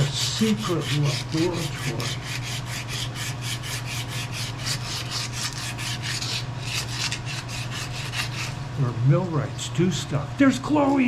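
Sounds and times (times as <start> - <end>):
hand file rasping metal: 0.0 - 8.6.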